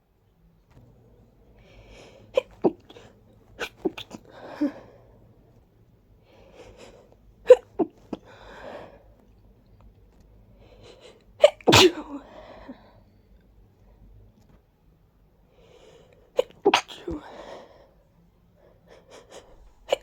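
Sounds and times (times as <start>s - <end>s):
person sneezing: 2.4s - 3.0s, 3.6s - 4.8s, 7.5s - 8.2s, 11.4s - 12.3s, 16.4s - 17.3s, 19.2s - 20.0s.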